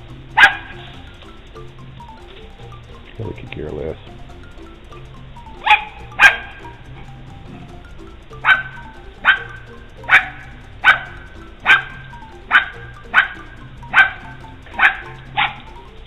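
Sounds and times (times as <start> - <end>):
dog barking: 0.4 - 0.9, 5.6 - 6.6, 8.4 - 15.7.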